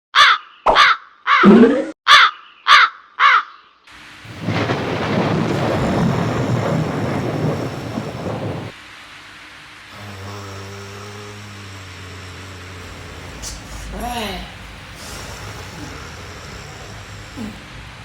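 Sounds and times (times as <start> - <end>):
crow cawing: 0.2 - 1.5, 2.1 - 3.8
thunder rumbling: 4.2 - 8.8.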